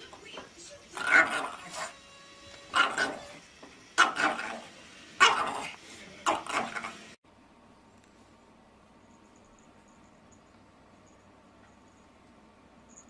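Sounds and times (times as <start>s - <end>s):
dog barking: 2.7s - 3.3s, 4.0s - 4.6s, 5.2s - 7.0s.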